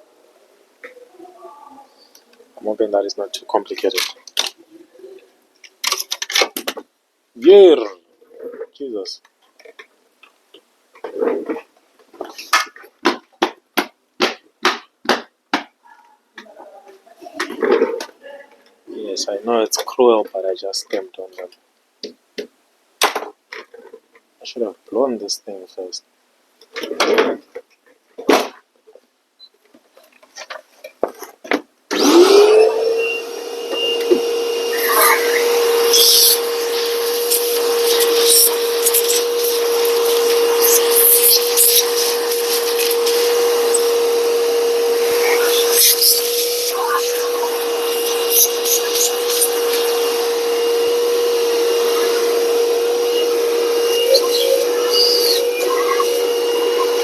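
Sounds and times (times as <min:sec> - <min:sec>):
electric blower motor: 0:31.9 - 0:57.0.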